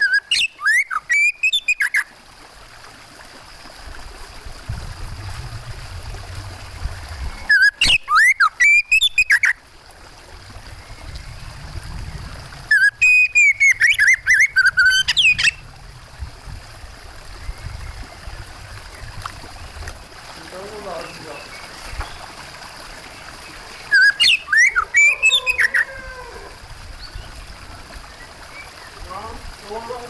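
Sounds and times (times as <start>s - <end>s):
bird singing whistled phrases: 0.0s - 2.1s, 7.4s - 9.6s, 12.7s - 15.6s, 23.9s - 26.0s
running water: 0.0s - 30.0s.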